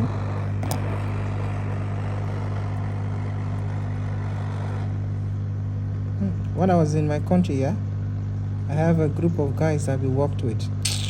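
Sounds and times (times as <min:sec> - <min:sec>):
motor humming: 0:00.0 - 0:07.1.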